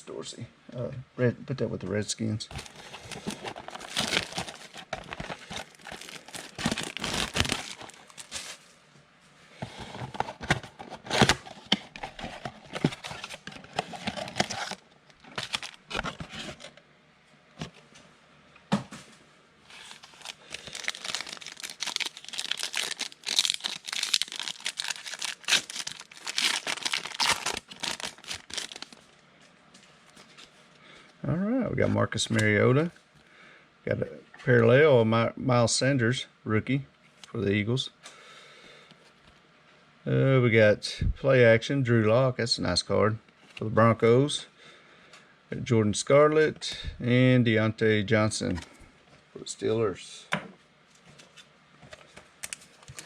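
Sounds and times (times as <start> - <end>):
card pack wrappers tearing and crinkling: 2.5 - 8.6, 10.0 - 16.7, 19.7 - 29.0.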